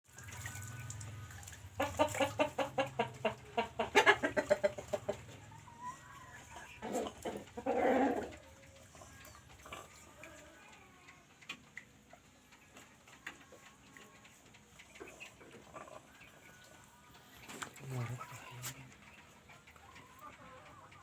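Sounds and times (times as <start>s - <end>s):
chicken drawn-out call: 0.1s - 11.6s
chickens clucking: 0.1s - 21.0s.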